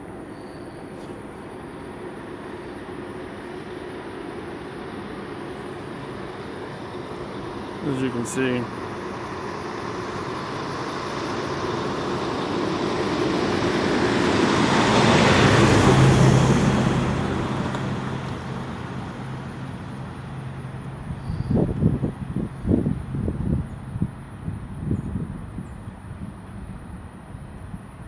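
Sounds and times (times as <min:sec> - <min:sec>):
vehicle passing by: 0:04.3 - 0:21.2.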